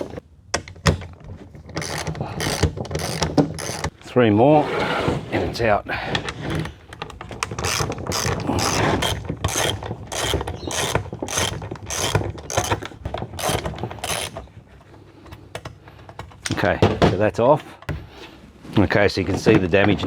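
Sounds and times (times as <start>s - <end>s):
ratchet wrench clicking: 1.8s - 3.9s, 7.6s - 12.8s, 13.4s - 14.4s.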